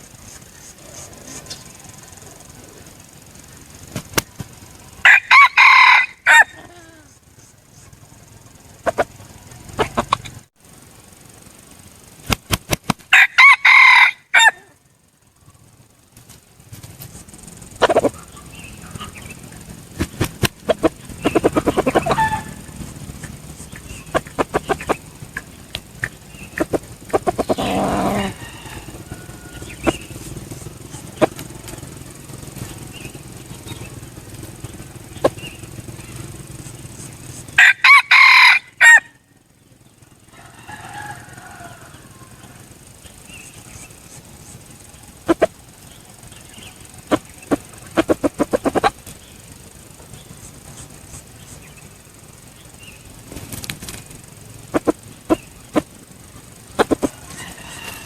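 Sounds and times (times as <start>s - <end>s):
scattered clicks: 0.0s - 5.0s, 11.4s - 13.1s, 16.1s - 37.6s, 42.4s - 58.0s
clucking calls: 0.0s - 10.5s, 15.4s - 39.2s, 39.9s - 58.0s
rooster crowing: 4.8s - 7.1s, 13.1s - 14.8s, 20.7s - 23.0s, 26.3s - 30.5s, 37.5s - 39.3s, 40.3s - 42.9s, 56.8s - 58.0s.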